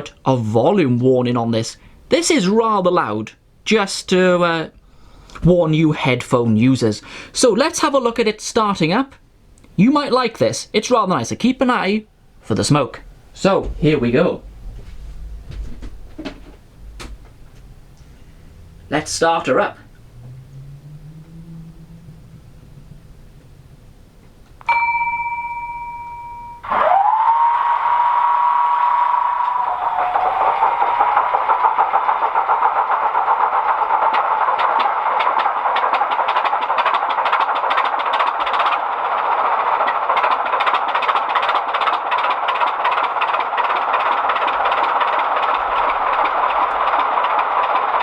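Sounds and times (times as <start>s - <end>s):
model diesel engine sound: 12.2s - 26.7s, 29.4s - 48.0s
brief steady tone: 24.6s - 26.7s.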